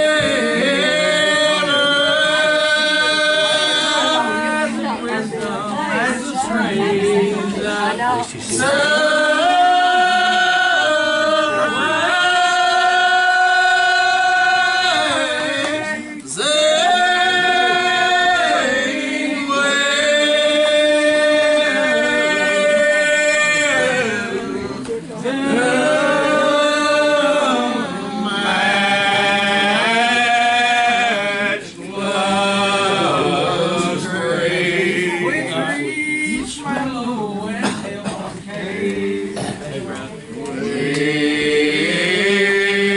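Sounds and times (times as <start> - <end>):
congregation singing a hymn: 0.0 - 42.9.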